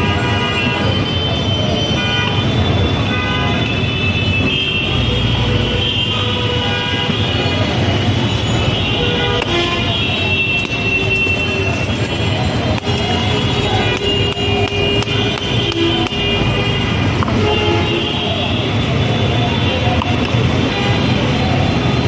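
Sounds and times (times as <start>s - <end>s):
street traffic: 0.0s - 22.0s
vehicle horns tooting: 0.0s - 22.0s.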